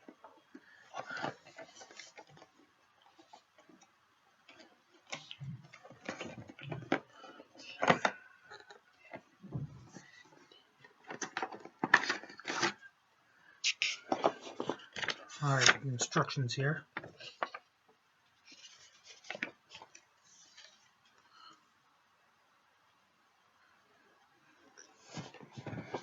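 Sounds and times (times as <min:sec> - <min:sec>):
packaging rustling: 0:10.0 - 0:12.9.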